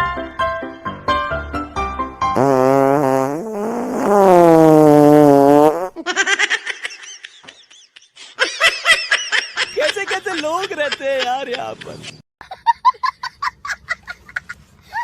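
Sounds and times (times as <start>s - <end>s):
buzzing prank fart sound: 2.4s - 6.0s.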